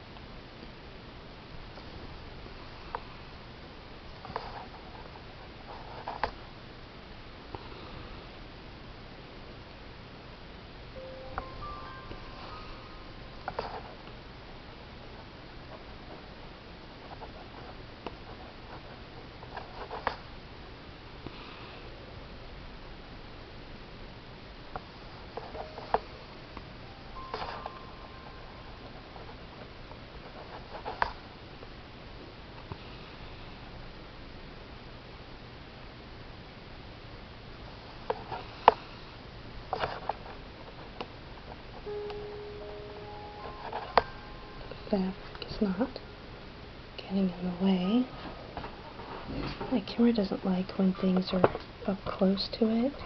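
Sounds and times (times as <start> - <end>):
background hiss: 0.0 - 53.0
soft background music: 10.9 - 14.4, 25.5 - 30.6, 41.8 - 48.9.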